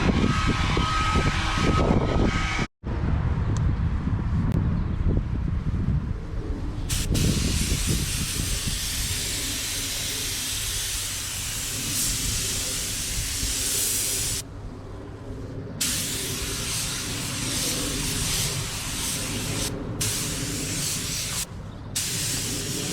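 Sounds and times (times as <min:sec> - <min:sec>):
paint spray gun hissing: 0:06.9 - 0:14.4, 0:15.8 - 0:22.9.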